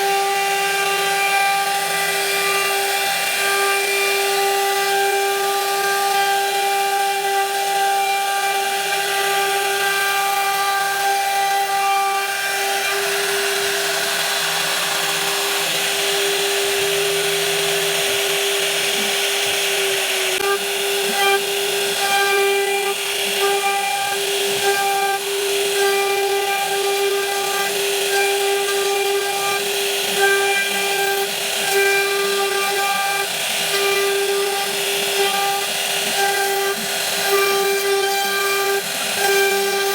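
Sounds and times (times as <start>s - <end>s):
rasping hiss of wood cutting: 0.0s - 39.9s
router spindle high whine: 0.0s - 39.9s.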